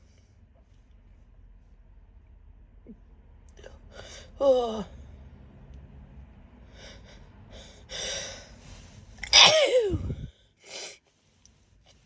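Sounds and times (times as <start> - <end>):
woman sneezing: 9.2 - 10.2.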